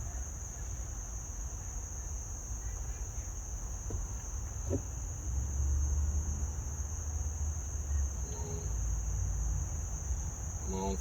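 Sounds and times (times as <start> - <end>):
crickets trilling: 6.7 - 11.0.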